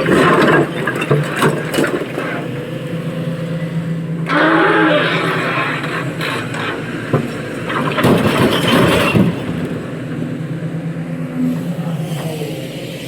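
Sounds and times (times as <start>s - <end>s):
heavy diesel engine running: 0.0s - 13.0s
loud rough burst of noise: 4.2s - 6.9s.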